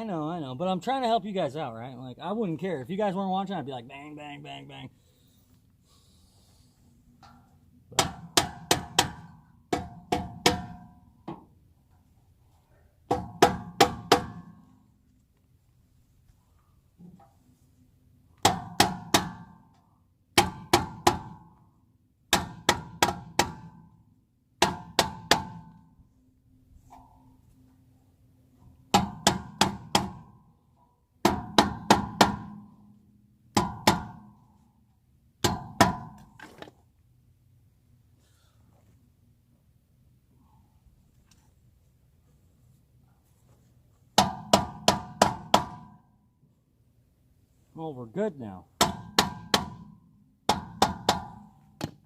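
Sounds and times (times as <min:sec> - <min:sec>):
hammer striking metal hubcap: 0:33.6 - 0:34.3.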